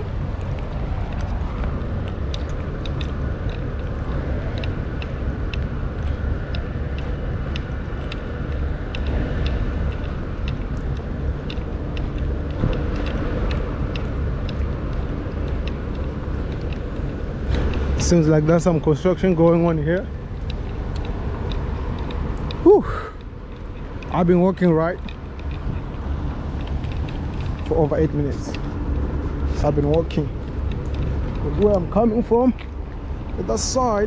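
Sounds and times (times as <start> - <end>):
city road traffic rumble: 0.0 - 34.0
light ticks: 0.0 - 34.0.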